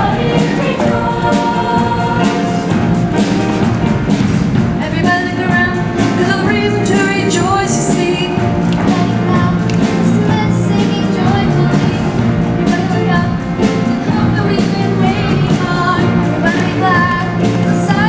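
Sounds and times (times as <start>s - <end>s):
choir singing: 0.0s - 3.5s
accompaniment music with beat: 0.0s - 18.0s.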